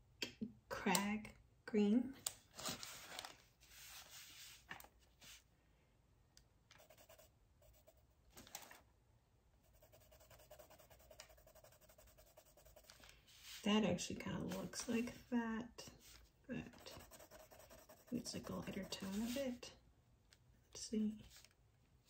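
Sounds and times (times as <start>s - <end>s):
coloured pencil scratching paper: 6.8s - 8.0s, 9.6s - 13.6s, 16.7s - 19.6s.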